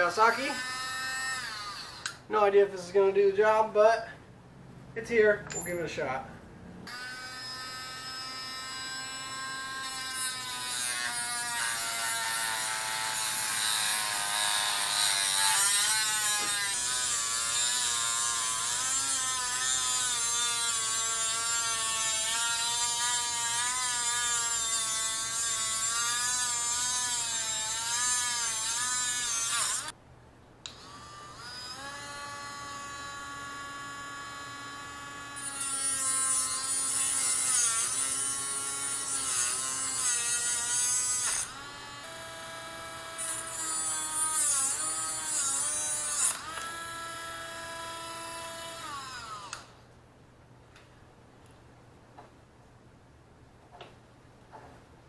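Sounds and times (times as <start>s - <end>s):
rotary tool whining: 0.0s - 2.3s, 6.9s - 30.0s, 30.7s - 49.8s.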